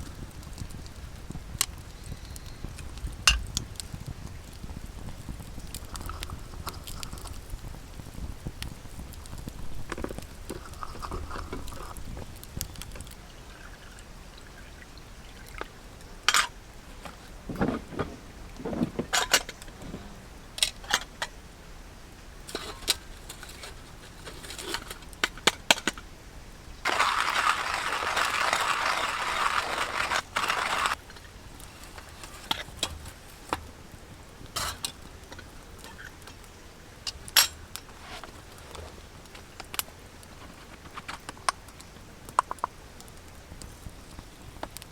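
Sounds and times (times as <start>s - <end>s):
liquid pouring: 13.0s - 15.8s
metal camp gear clicking: 16.3s - 21.3s, 22.5s - 26.0s, 34.6s - 35.0s.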